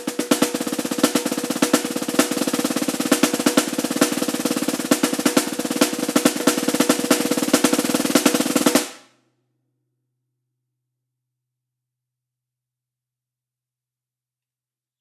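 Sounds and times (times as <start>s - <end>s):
snare drum roll: 0.0s - 9.0s.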